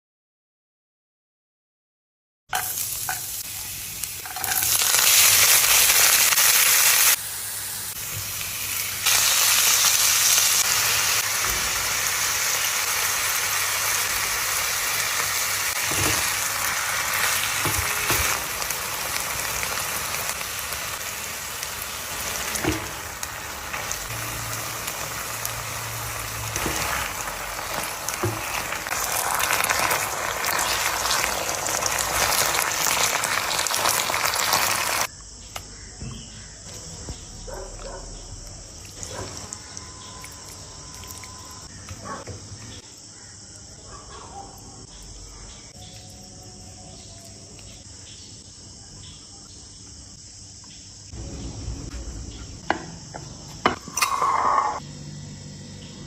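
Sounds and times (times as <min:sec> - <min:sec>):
chicken sizzling in hot oil: 0:02.5 - 0:35.1.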